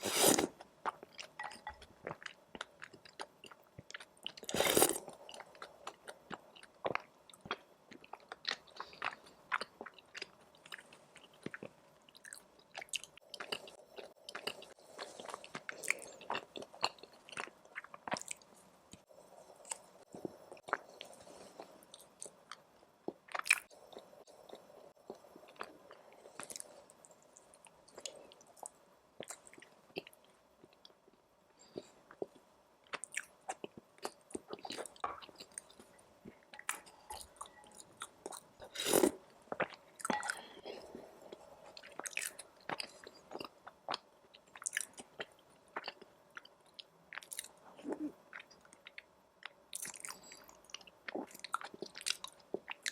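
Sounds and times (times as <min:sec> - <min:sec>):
person chewing: 0:00.0 - 0:18.5, 0:31.6 - 0:52.9.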